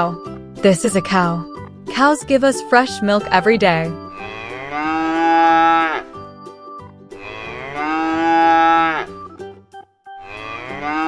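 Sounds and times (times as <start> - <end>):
cow mooing: 4.2 - 6.0, 7.2 - 9.1, 10.3 - 11.0.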